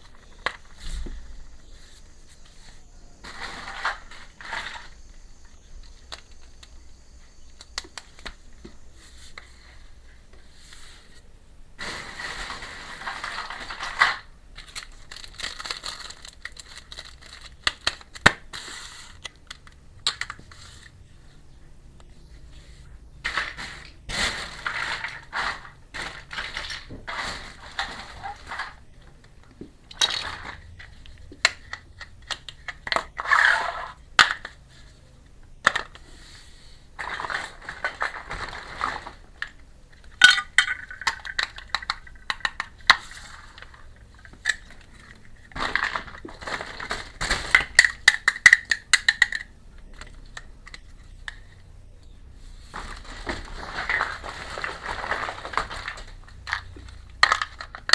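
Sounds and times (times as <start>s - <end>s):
packaging rustling: 11.8s - 20.9s, 23.2s - 34.0s, 37.0s - 50.8s, 52.6s - 57.9s
small toy pieces clicking: 13.2s - 18.3s, 39.4s - 46.2s, 47.5s - 51.4s, 53.9s - 57.9s.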